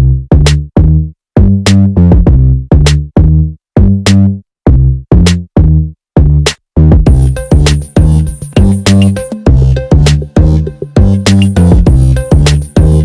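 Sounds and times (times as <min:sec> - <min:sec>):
electronic music with bass beat: 0:00.0 - 0:13.0
high steady tone: 0:07.1 - 0:13.0.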